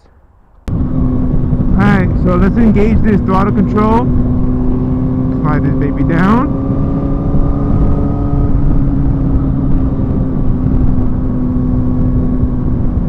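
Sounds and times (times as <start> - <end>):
loud wind and road rush: 0.0 - 13.0
motorcycle engine cruising: 0.0 - 13.0.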